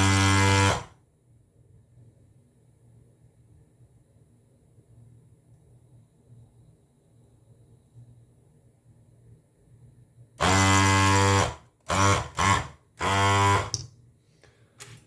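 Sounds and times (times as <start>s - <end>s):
desoldering pump buzzing: 0.0s - 0.9s, 10.4s - 13.9s.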